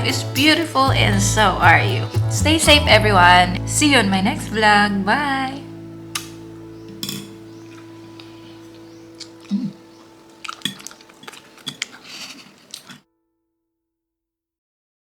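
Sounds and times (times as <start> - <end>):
tableware clicking and clinking: 6.9 - 7.9, 10.5 - 13.0.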